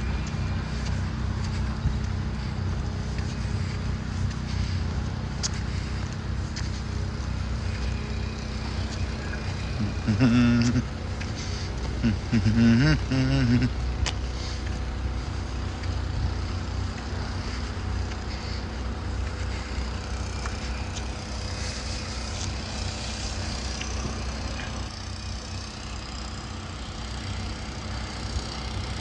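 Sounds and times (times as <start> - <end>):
engine rumbling: 0.0 - 29.0
faint steady hum: 0.0 - 29.0.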